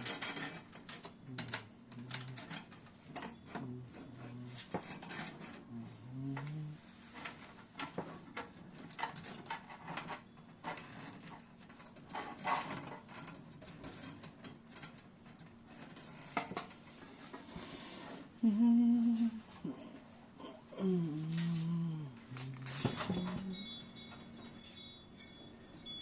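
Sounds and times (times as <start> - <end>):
computer hardware clicking and rattling: 0.0 - 3.6, 7.8 - 16.8, 22.4 - 23.5
person humming: 3.6 - 4.7, 5.7 - 6.8, 18.4 - 23.8.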